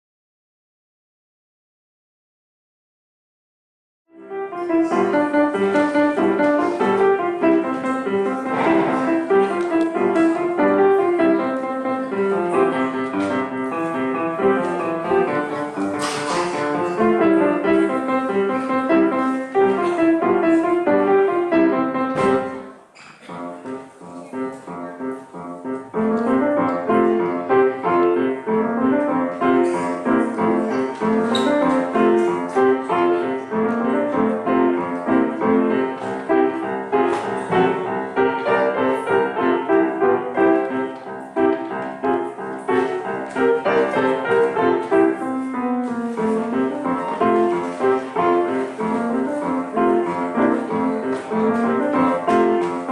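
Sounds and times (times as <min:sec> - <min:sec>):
lively piano piece: 0:04.1 - 0:52.9.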